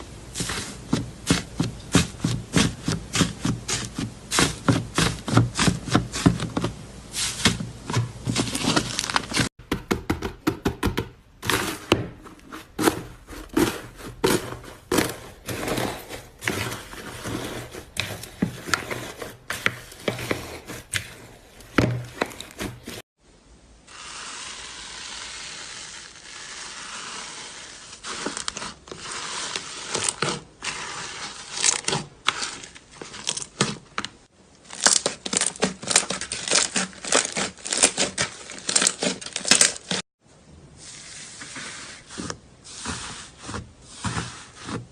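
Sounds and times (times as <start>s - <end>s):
slime squishing: 0.0s - 9.5s, 11.4s - 23.0s, 25.1s - 40.0s, 40.8s - 44.9s
crackling and popping of air: 0.0s - 13.6s.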